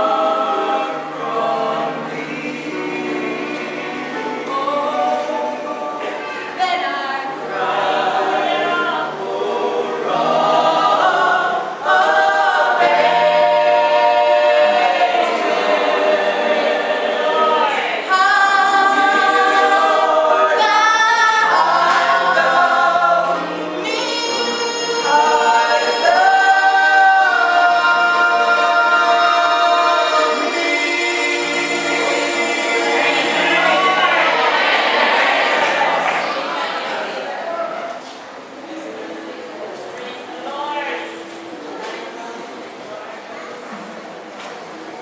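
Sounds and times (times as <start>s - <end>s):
church choir singing: 0.0s - 44.0s.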